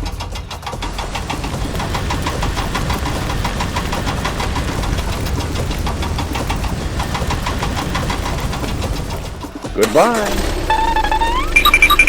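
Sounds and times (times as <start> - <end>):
engine rumbling with rapid ticking: 0.0 - 12.0.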